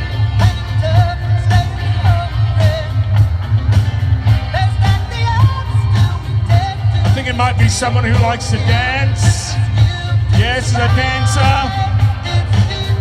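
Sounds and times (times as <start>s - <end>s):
male-range singing: 0.0s - 3.2s, 4.4s - 13.0s
bass: 0.0s - 13.0s
drum beat: 0.0s - 13.0s
guitar: 0.0s - 13.0s.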